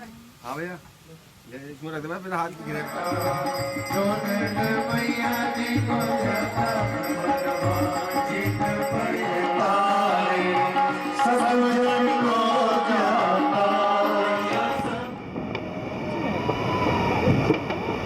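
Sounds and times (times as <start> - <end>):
indian music melody: 2.3 - 15.3.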